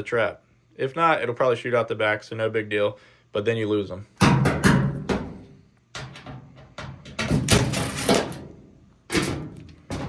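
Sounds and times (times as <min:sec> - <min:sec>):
dryer parts and tools clattering: 0:04.2 - 0:10.0
scraping rattle: 0:06.0 - 0:10.0.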